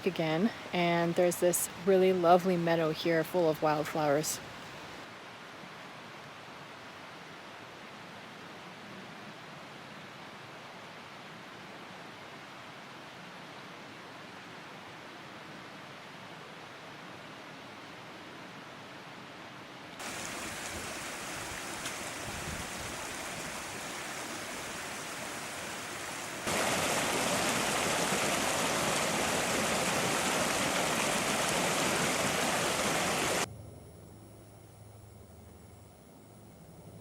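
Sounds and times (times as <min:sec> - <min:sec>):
creek water rushing: 0:20.0 - 0:33.5.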